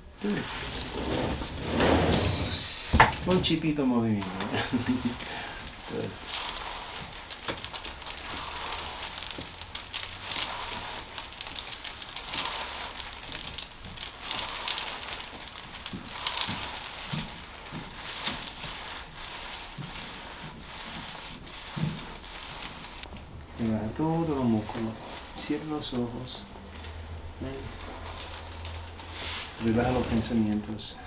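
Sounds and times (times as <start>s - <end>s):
crackling rustling handling noise: 0.0s - 31.0s
soft knocks: 0.6s - 3.6s.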